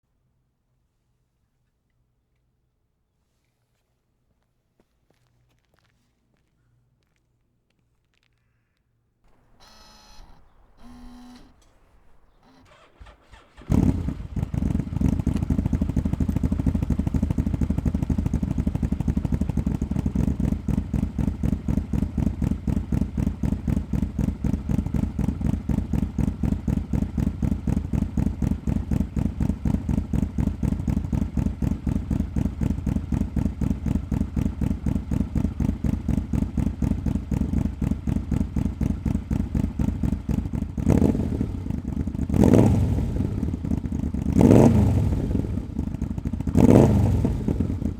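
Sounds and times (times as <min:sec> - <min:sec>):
motorcycle engine idling: 0:09.3 - 0:47.9
engine revving: 0:09.4 - 0:20.3, 0:40.9 - 0:41.6, 0:42.3 - 0:43.5, 0:44.3 - 0:45.6, 0:46.5 - 0:47.9.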